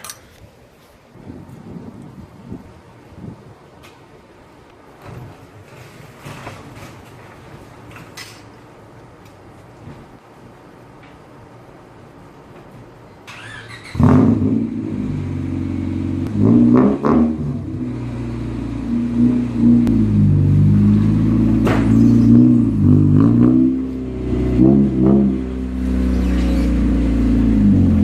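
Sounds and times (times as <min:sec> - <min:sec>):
car engine starting and revving: 0:13.4 - 0:28.0.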